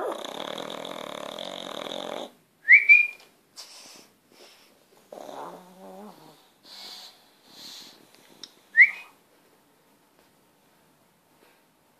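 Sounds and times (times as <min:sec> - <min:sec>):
dog snoring: 0:00.0 - 0:02.4, 0:05.1 - 0:07.1
faint breath: 0:03.6 - 0:04.8, 0:06.4 - 0:08.4.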